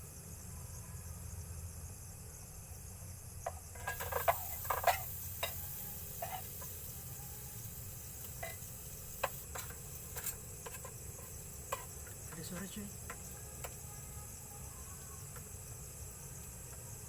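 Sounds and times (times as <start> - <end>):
fish sizzling in pan: 3.7 - 17.0
spoon tapping against pan: 3.8 - 6.8, 8.2 - 13.8.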